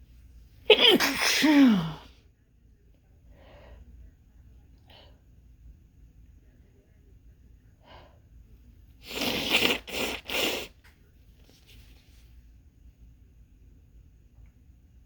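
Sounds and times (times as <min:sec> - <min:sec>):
noisy blasts of air through nose: 0:09.0 - 0:10.8
person sniffing: 0:09.0 - 0:10.8.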